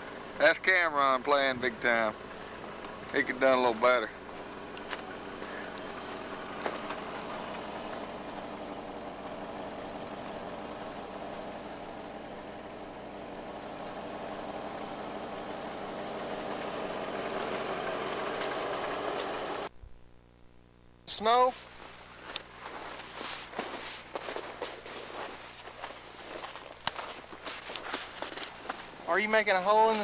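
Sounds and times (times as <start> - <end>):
steady mechanical hum: 0.0 - 30.0.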